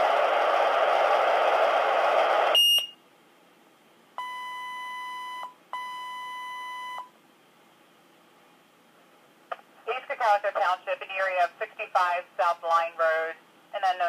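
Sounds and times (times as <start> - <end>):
pager long beeps: 2.6 - 3.0, 4.2 - 7.1
radio channel hiss: 9.5 - 14.0.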